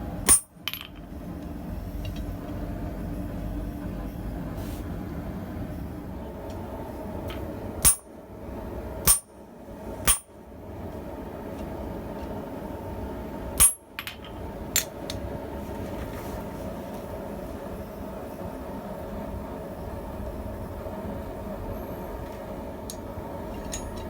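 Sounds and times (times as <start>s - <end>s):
hammer striking steel on anvil: 0.3s - 0.9s, 7.8s - 8.1s, 9.1s - 9.3s, 10.1s - 10.4s, 13.6s - 13.8s.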